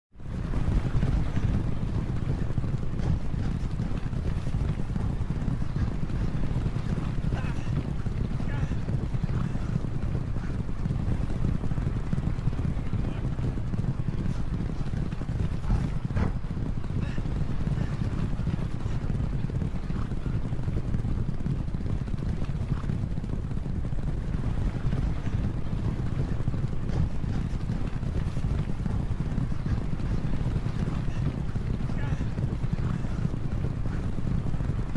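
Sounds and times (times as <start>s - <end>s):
horses galloping hoofbeats: 0.1s - 34.9s.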